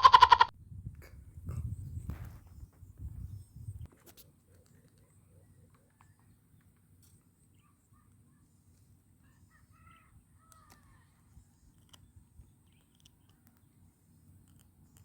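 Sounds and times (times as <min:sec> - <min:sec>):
faint bird calls: 0:04.5 - 0:15.0.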